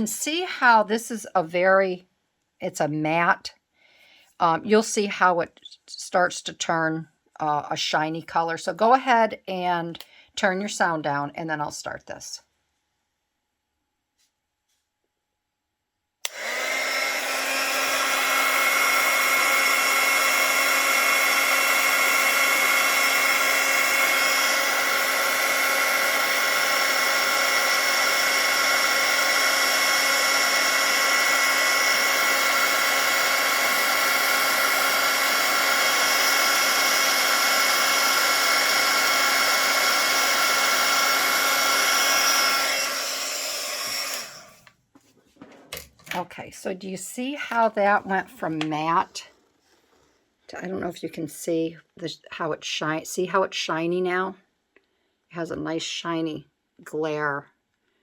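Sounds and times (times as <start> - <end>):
heat tool fan whining: 16.2 - 44.6.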